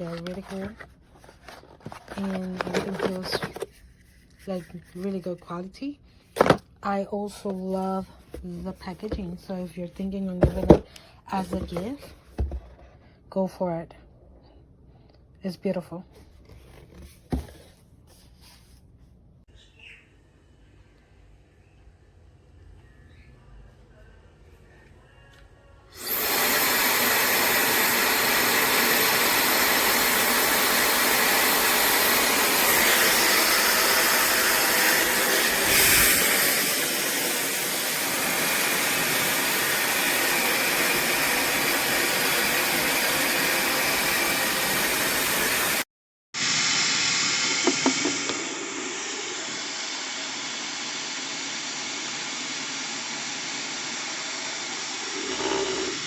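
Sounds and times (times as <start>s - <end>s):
hair dryer blowing air: 25.9s - 56.0s.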